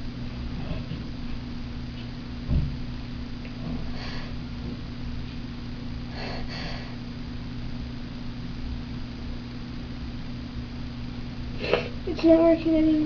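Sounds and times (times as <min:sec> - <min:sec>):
electrical hum and hiss: 0:00.0 - 0:13.0
sniffing through nose: 0:06.1 - 0:07.0, 0:11.6 - 0:12.0.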